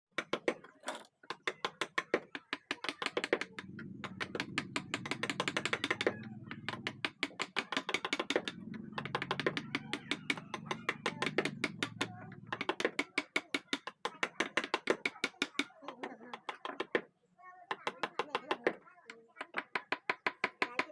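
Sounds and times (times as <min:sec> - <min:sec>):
rapid even tapping: 0:01.3 - 0:17.1.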